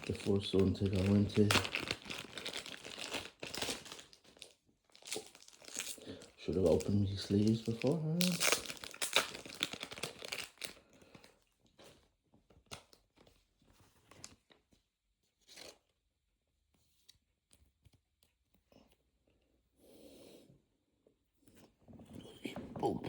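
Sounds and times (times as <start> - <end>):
cards rustling and clicking: 0.0 - 4.4
plastic packaging tearing: 0.0 - 10.8.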